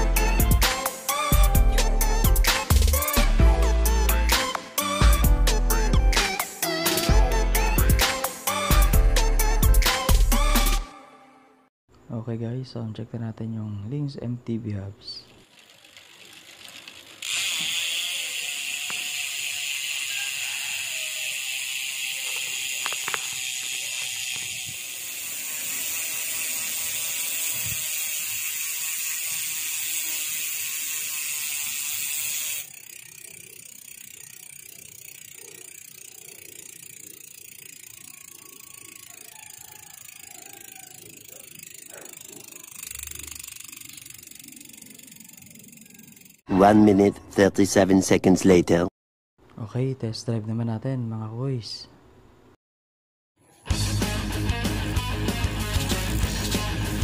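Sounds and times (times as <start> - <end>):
bicycle hub ratchet buzzing: 0.0 - 10.8, 15.4 - 46.5, 54.6 - 57.0.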